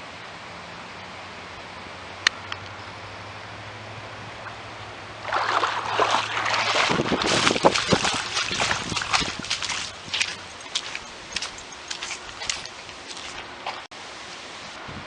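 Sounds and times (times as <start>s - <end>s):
wading through water splashing: 4.4s - 13.9s.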